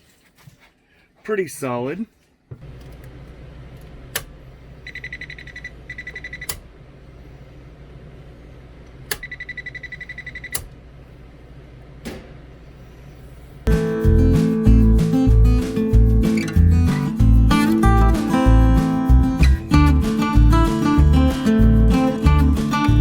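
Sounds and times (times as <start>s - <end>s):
rapid electronic beeping: 4.8s - 6.5s, 9.2s - 10.6s.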